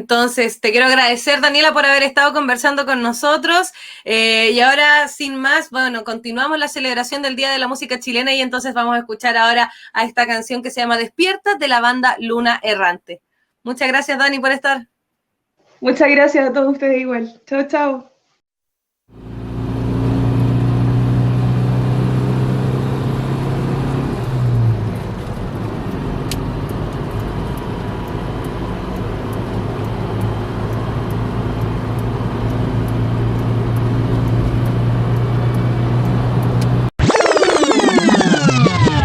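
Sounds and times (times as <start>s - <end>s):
low droning hum: 24.5s - 36.6s.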